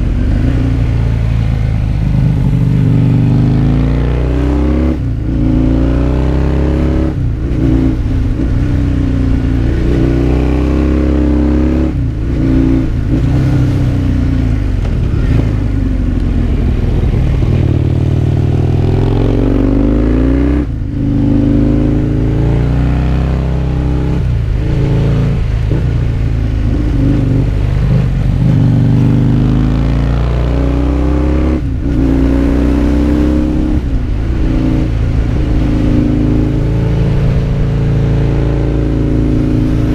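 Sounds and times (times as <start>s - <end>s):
motorcycle engine revving: 0.0s - 39.9s
wind noise: 30.6s - 39.9s.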